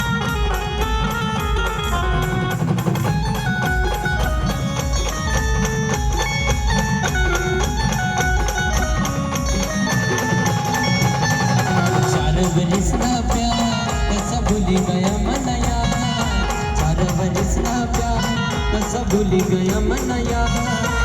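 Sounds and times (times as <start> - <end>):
steady drum beat: 0.0 - 21.0.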